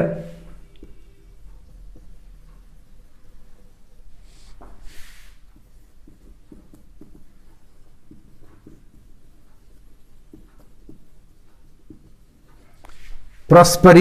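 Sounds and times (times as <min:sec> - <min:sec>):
pen writing taps and scrapes: 0:00.5 - 0:02.7, 0:04.5 - 0:13.2.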